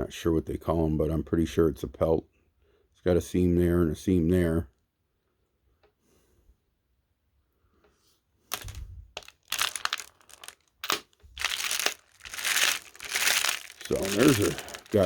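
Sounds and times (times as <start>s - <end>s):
crinkling rustling handling noise: 8.5s - 15.0s.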